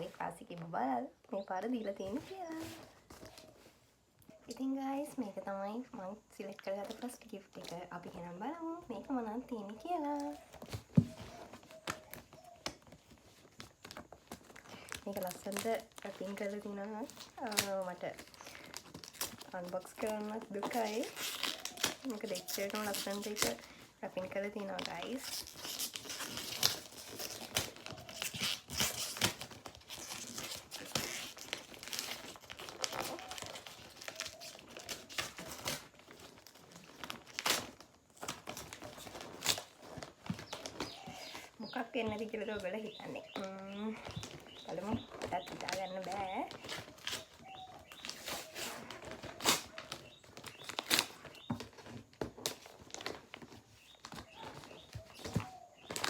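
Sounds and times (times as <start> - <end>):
wrapping paper crinkling and tearing: 9.8 - 56.0.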